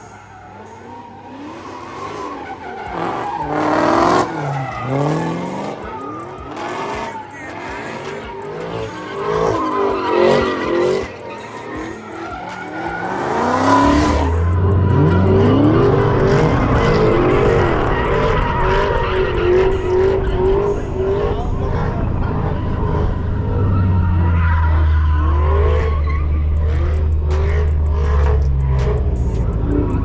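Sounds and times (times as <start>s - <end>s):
car engine revving: 0.0s - 30.0s
tyres squealing and skidding: 0.0s - 30.0s
deep heavy engine rumble: 13.8s - 30.0s.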